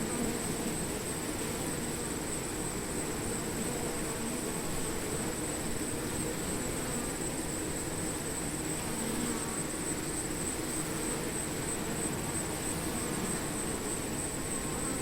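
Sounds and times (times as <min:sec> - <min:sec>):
bees buzzing: 0:08.7 - 0:15.0.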